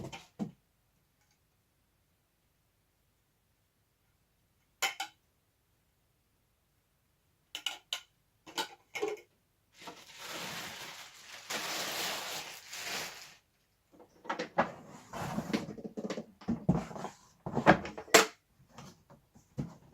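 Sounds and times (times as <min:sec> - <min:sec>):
rustling: 0:09.8 - 0:13.4.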